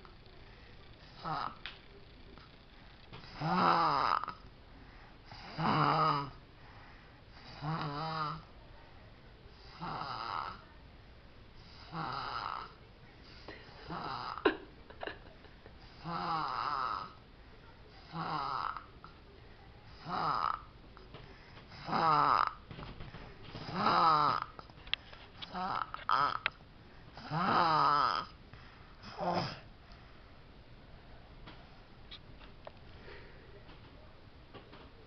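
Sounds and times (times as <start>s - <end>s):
toddler snoring: 1.0s - 1.7s, 3.2s - 4.4s, 5.3s - 6.4s, 7.4s - 8.5s, 9.6s - 10.6s, 11.6s - 14.4s, 15.9s - 17.2s, 17.9s - 19.1s, 19.9s - 20.7s, 21.7s - 22.6s, 23.5s - 24.6s, 25.4s - 26.5s, 27.2s - 28.4s, 29.0s - 29.7s.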